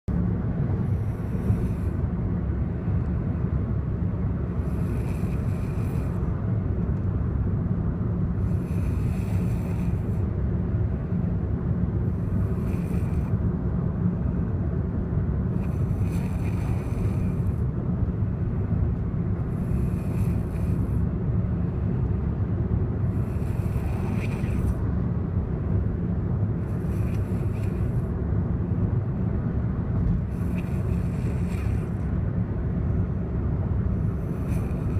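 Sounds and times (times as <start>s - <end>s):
steady low rumble: 0.1s - 34.9s
person snoring: 15.6s - 17.5s.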